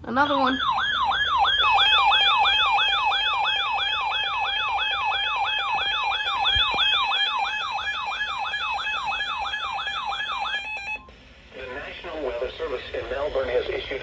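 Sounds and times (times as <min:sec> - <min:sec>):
electronic siren-like alert tone: 0:00.1 - 0:11.1.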